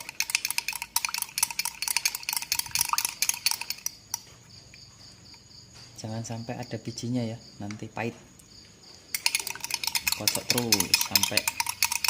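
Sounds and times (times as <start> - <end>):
spoon clinking against container: 0.0 - 4.3, 9.2 - 12.0.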